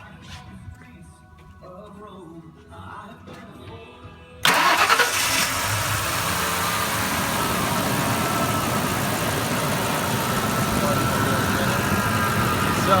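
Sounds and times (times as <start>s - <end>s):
truck engine starting and idling: 4.4s - 13.0s.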